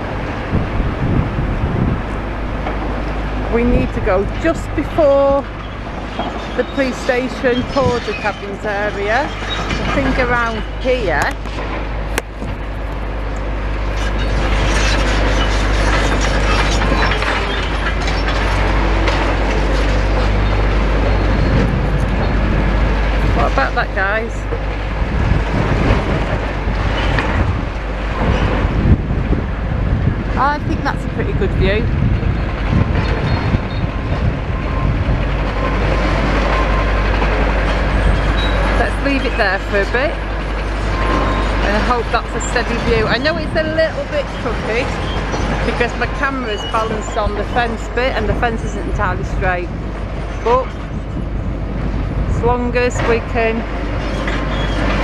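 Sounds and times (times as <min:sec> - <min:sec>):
excavator engine drone: 0:00.0 - 0:55.0
wind on microphone: 0:00.0 - 0:55.0
rubble clattering and crunching: 0:04.0 - 0:23.8.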